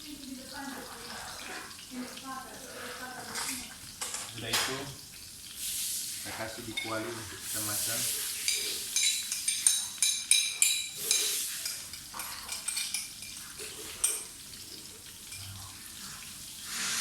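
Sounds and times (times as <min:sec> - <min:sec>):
metal utensil clinking on wok: 0:06.7 - 0:07.0, 0:08.4 - 0:13.4.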